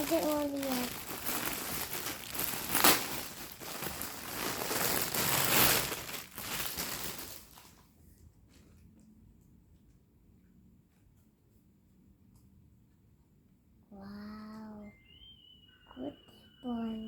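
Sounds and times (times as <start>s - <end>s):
package wrapping crinkling and tearing: 0.0s - 7.8s.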